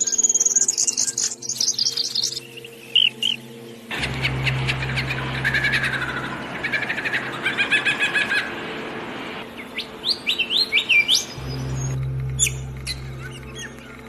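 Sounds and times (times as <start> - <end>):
birds chirping and whistling: 0.0 - 8.5, 9.5 - 14.0
low hum: 3.9 - 7.6, 11.2 - 14.0.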